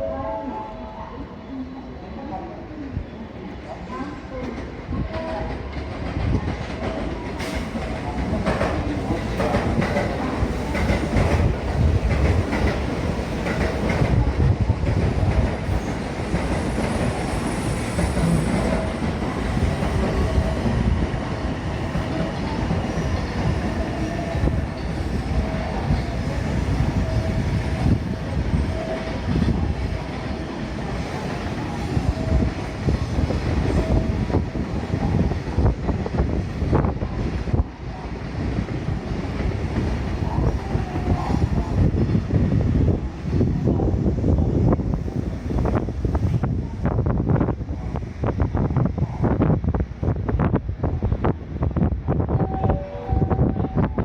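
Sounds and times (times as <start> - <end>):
train wheels clattering: 4.4 - 20.8.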